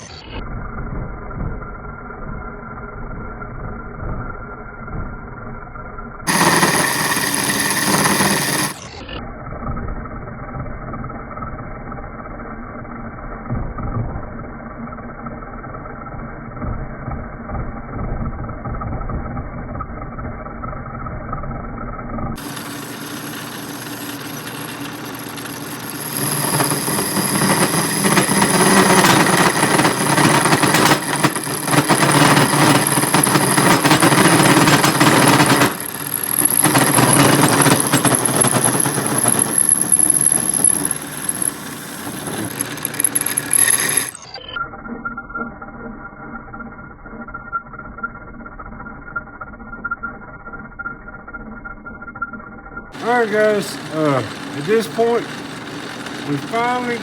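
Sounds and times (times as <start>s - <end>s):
thin high whine: 0.0s - 0.4s, 6.3s - 9.2s, 22.4s - 48.3s
metal lathe cutting metal: 6.3s - 9.0s, 22.4s - 44.2s, 53.0s - 57.0s.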